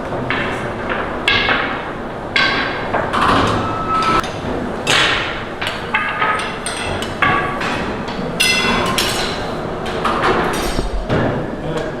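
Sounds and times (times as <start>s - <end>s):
metal kitchenware clanking: 5.6s - 10.8s.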